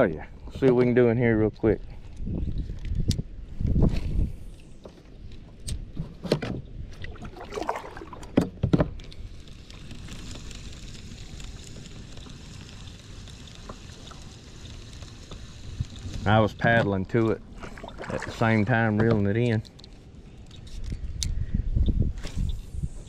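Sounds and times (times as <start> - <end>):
paddle strokes and splashes: 6.9 - 8.6, 17.4 - 18.7
steady rushing hiss: 9.1 - 17.6.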